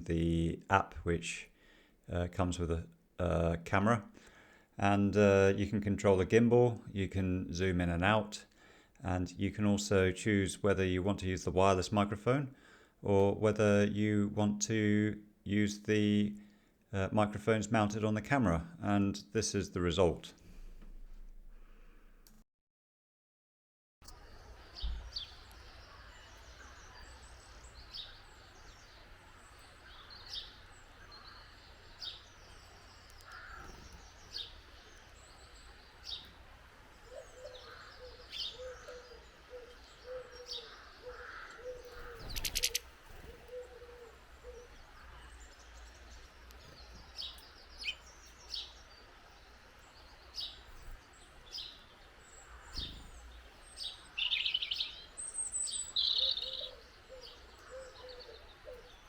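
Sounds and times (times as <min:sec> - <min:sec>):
small birds chirping: 0:24.0 - 0:59.0
low repeated bird notes: 0:24.2 - 0:59.0
sharp click: 0:42.3 - 0:42.9.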